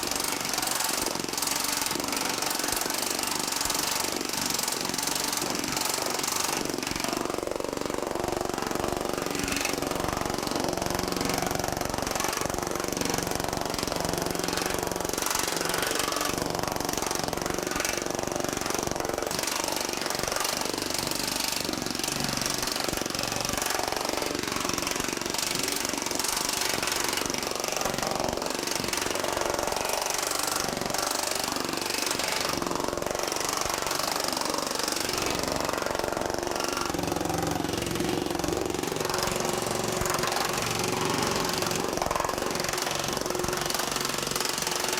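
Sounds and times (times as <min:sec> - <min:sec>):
pneumatic power hammer hammering: 0:00.0 - 0:44.9.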